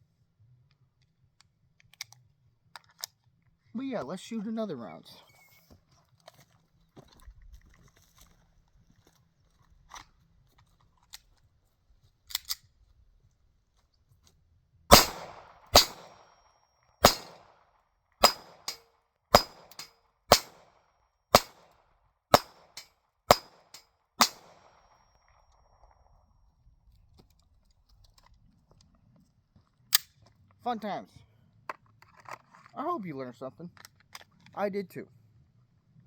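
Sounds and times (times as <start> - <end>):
fainter gunshots: 14.9 - 16.2, 17.0 - 17.5, 18.2 - 18.8, 19.4 - 20.6, 21.4 - 21.6, 22.3 - 24.8
handling clicks: 14.9 - 16.2, 17.0 - 17.4, 18.2 - 20.6
pistol shots: 14.9 - 16.3, 17.0 - 17.5, 18.2 - 20.7, 21.3 - 21.7, 22.3 - 25.0.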